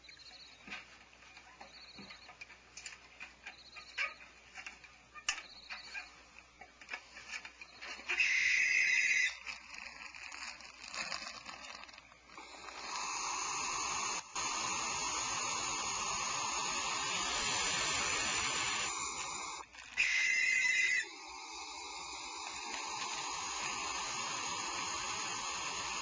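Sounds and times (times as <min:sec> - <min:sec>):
owl screeching: 0:08.0 - 0:09.4, 0:12.4 - 0:26.0
owl hissing call: 0:08.0 - 0:09.6, 0:12.3 - 0:26.0.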